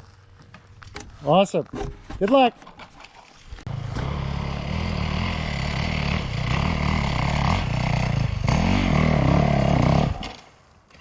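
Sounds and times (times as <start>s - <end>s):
dirt bike engine revving: 3.7s - 10.4s.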